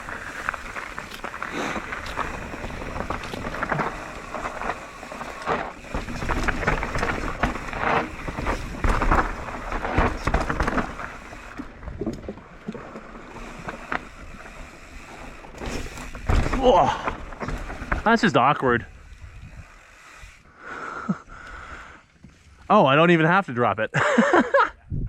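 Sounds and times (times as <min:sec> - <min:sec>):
tyre rumble on dirt: 0:00.0 - 0:12.4, 0:15.6 - 0:18.6
bike knocks and rattles: 0:00.0 - 0:14.5, 0:15.4 - 0:18.9.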